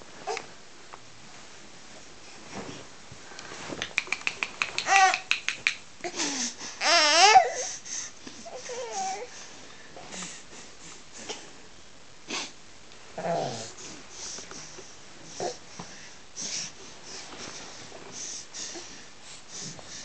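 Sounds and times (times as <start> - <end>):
baby cooing: 4.8 - 5.4
baby squealing: 4.8 - 5.4.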